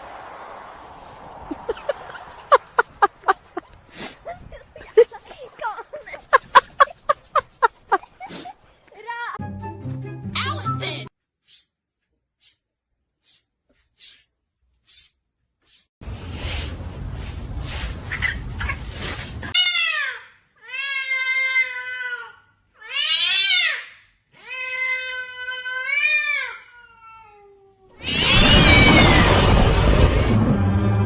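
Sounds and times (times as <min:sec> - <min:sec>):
cat meowing: 0:25.9 - 0:29.2
loud burst of noise: 0:28.1 - 0:31.0.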